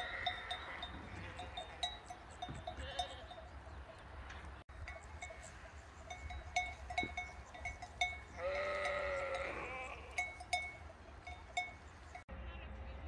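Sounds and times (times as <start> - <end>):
farm animal bleating: 0.0 - 3.6, 6.3 - 13.0
small bells clinking: 0.0 - 12.3.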